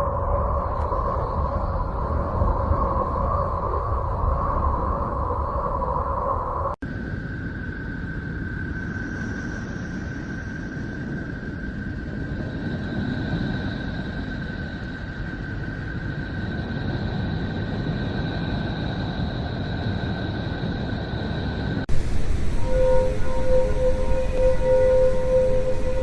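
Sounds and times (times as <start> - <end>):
low rumbling drone: 21.9 - 26.0
second higher tone: 21.9 - 26.0
thin high tone: 21.9 - 26.0.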